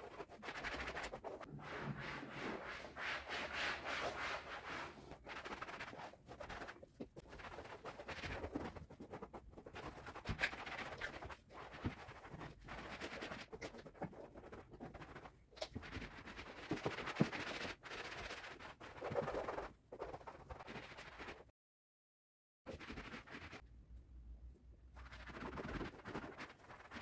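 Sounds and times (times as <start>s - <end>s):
scrubbing and wiping: 0.0s - 21.5s.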